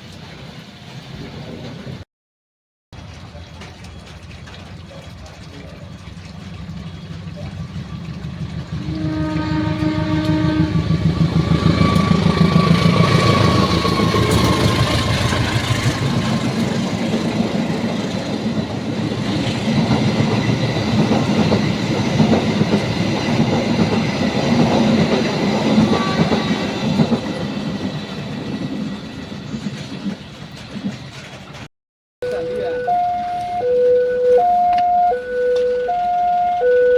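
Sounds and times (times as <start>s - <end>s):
train wheels clattering on rails: 3.0s - 31.7s
train horn: 8.8s - 14.8s, 25.7s - 26.8s, 32.3s - 36.9s.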